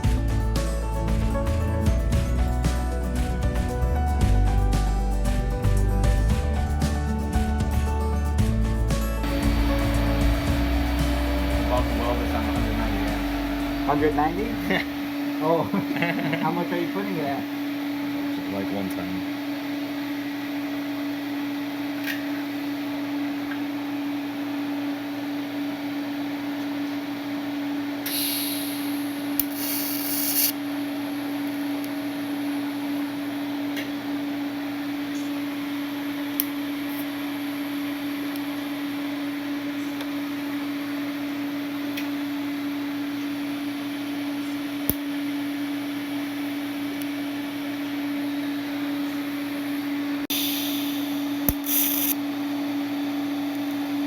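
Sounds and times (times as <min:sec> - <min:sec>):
machine hum: 0:09.0 - 0:18.4, 0:24.0 - 0:54.0
short hiss: 0:28.1 - 0:30.6, 0:50.3 - 0:52.2.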